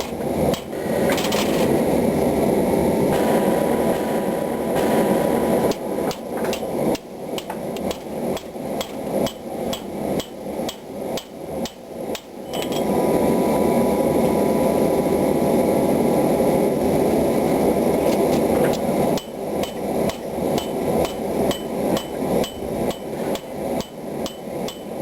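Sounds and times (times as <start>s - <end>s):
steady rushing noise: 0.0s - 25.0s
hammer striking hot steel on anvil: 3.1s - 12.9s, 18.4s - 25.0s.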